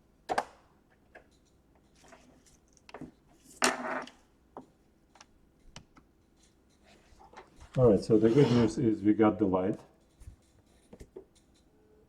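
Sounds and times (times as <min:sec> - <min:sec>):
scraping rustle: 0:06.9 - 0:08.8.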